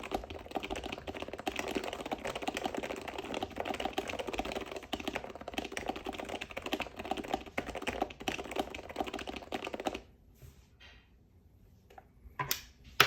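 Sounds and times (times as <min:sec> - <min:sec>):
fast typing on a keyboard: 0:00.0 - 0:10.1.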